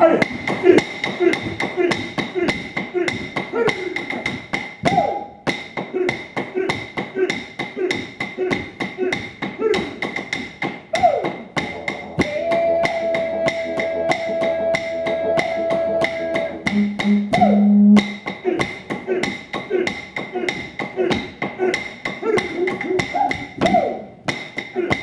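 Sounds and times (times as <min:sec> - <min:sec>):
voices chanting: 0:10.9 - 0:24.2
long held tone: 0:12.1 - 0:18.2
low hum: 0:16.7 - 0:18.2.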